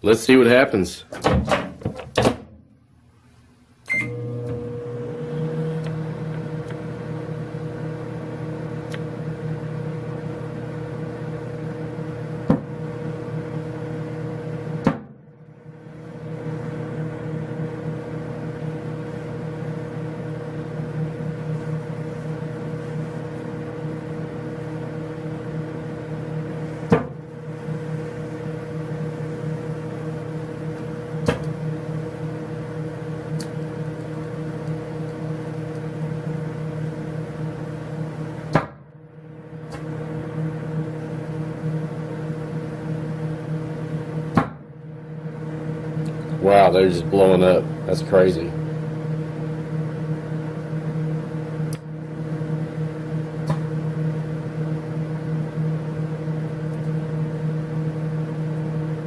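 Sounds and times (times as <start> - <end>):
microwave oven humming: 0.0 - 59.0.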